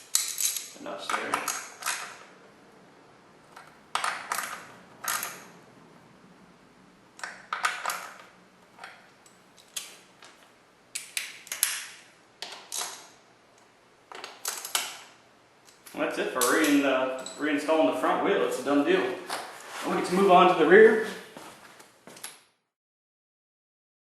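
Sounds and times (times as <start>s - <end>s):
metal hand tool clicking on nuts: 0.0s - 2.1s.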